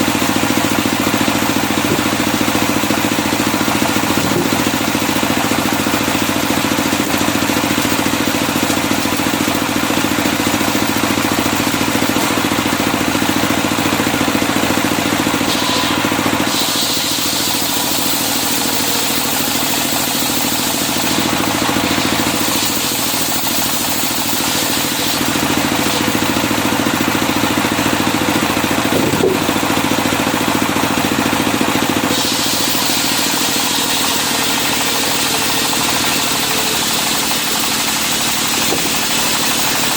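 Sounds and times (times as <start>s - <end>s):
sawmill engine droning: 0.0s - 39.9s
circular saw hissing: 15.4s - 29.5s, 32.1s - 39.9s.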